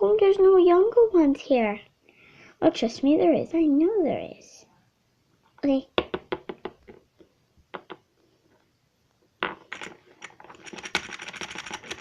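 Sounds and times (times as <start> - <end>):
plastic toys clicking on hard surface: 9.5 - 12.0.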